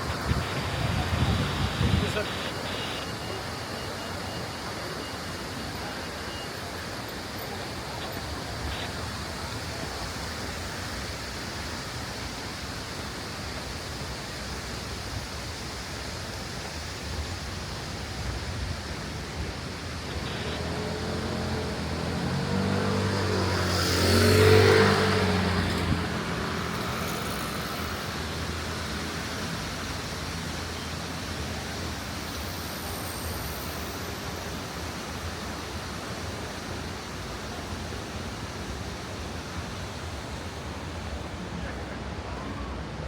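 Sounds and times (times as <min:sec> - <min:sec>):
distant traffic: 0:00.0 - 0:43.0
wind: 0:00.0 - 0:43.0
vehicle passing by: 0:20.2 - 0:29.2.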